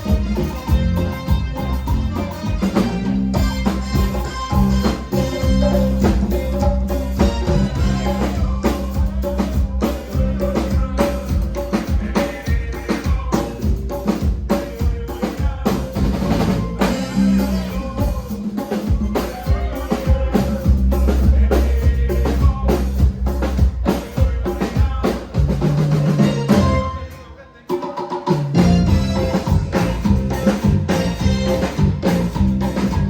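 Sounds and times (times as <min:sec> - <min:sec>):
sustained bass notes: 0:00.0 - 0:11.6, 0:15.7 - 0:18.4, 0:25.6 - 0:27.3, 0:28.6 - 0:33.0
drum kit strikes: 0:00.0 - 0:33.0
live band playing cumbia: 0:00.0 - 0:33.0.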